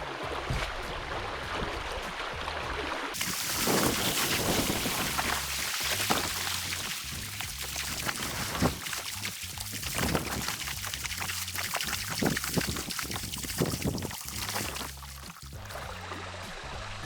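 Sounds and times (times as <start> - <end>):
water splashing and pouring: 2.4 - 16.4
sharp splashes: 3.2 - 16.2.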